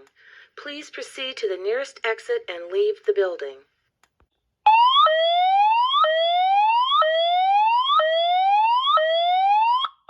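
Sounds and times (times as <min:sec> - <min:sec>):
fire alarm whoop tone: 0:04.7 - 0:10.0.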